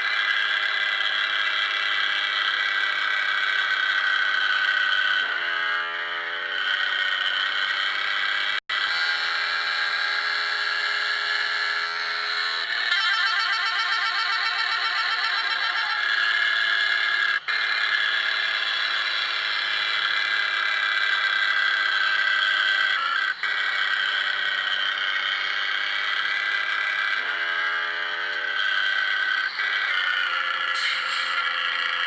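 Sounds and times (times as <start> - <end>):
air horns: 29.6 - 31.5.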